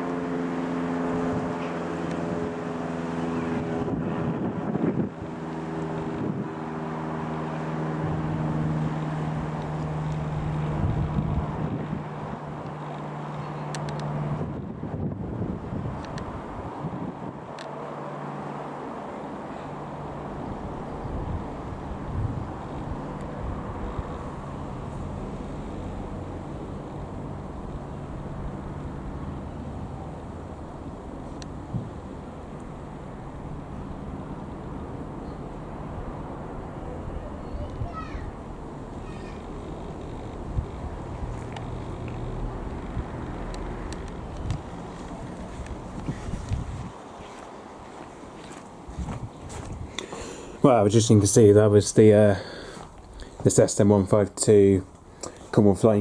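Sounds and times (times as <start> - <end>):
light aircraft flying past: 0.0 - 55.6
wind buffeting microphone: 3.3 - 12.8, 14.2 - 17.6, 19.4 - 47.0, 48.5 - 50.0.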